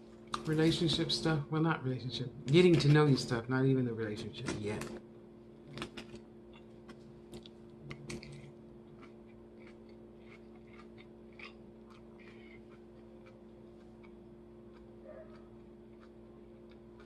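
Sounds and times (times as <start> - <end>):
chewing salad crunches: 5.7 - 17.0.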